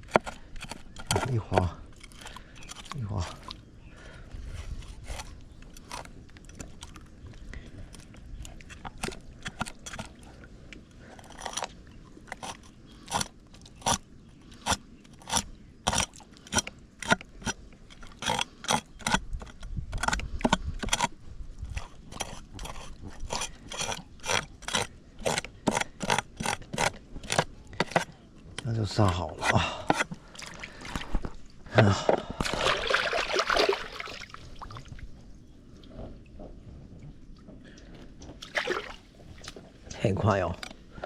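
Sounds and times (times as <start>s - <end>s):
knife scraping fish: 11.2s - 21.1s, 21.7s - 28.1s.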